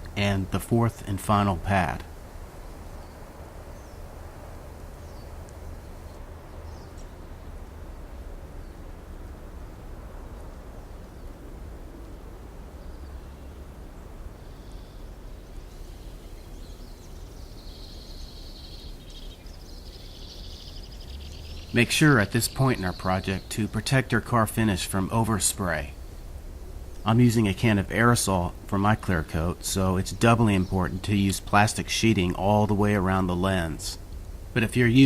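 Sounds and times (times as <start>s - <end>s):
faint high chirping: 12.7s - 23.8s.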